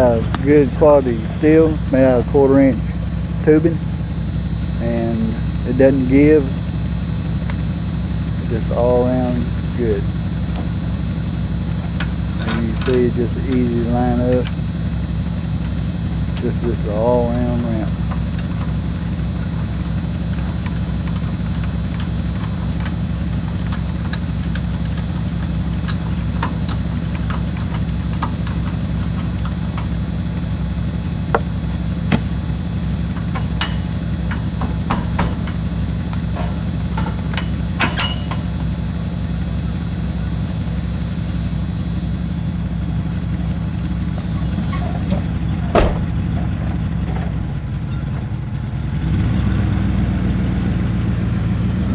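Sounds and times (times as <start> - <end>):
vehicle engine running: 0.0 - 51.9
sharp knocks: 45.7 - 46.6.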